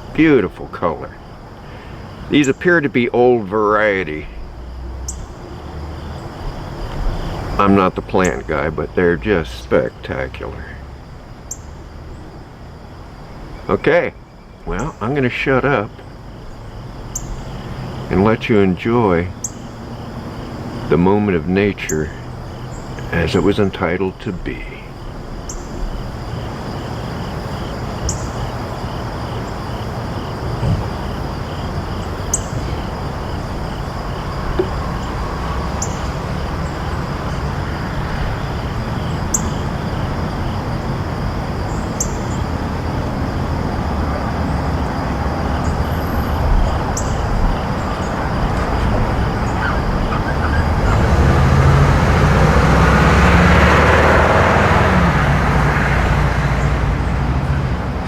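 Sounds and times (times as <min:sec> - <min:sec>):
insects trilling: 0:00.0 - 0:58.0
road traffic noise: 0:00.0 - 0:58.0
vehicle passing: 0:14.7 - 0:58.0.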